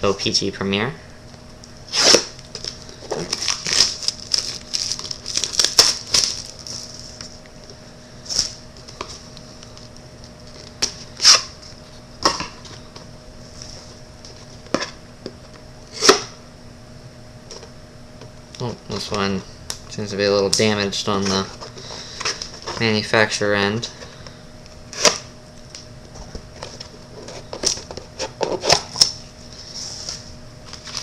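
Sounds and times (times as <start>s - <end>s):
wrapper crinkling and tearing: 2.0s - 7.2s.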